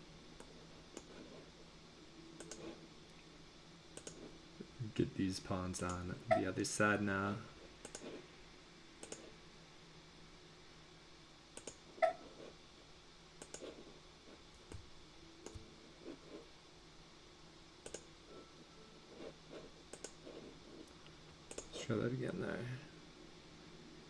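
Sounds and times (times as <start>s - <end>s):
faint room hum: 0.0s - 24.0s
computer mouse clicking: 0.4s - 1.3s, 2.4s - 2.8s, 3.9s - 4.3s, 7.8s - 8.2s, 9.0s - 9.3s, 11.6s - 11.9s, 13.4s - 13.8s, 14.5s - 15.7s, 17.8s - 18.1s, 19.9s - 21.8s.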